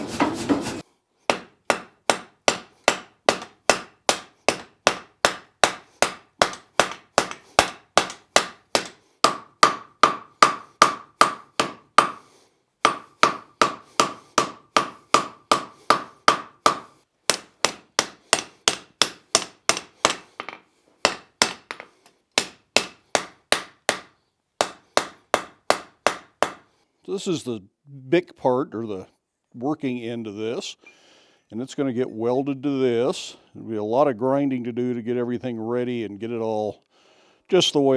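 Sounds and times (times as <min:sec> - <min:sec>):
hammer forging steel on anvil: 0:00.1 - 0:12.2, 0:12.8 - 0:21.8, 0:22.4 - 0:26.6.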